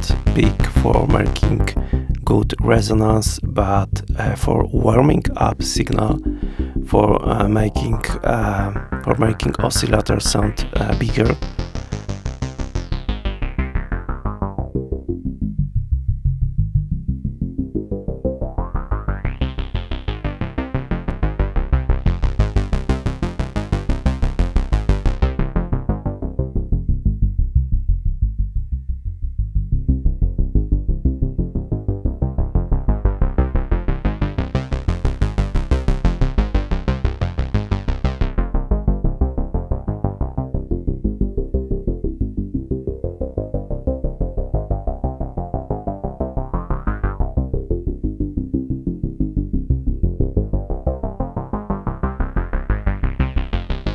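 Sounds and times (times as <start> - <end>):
synthesizer note sequence with filter sweeps: 5.6 - 9.0.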